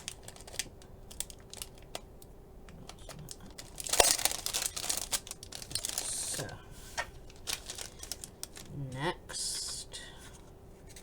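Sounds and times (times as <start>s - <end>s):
packaging crinkling: 0.0s - 2.1s, 2.7s - 9.0s.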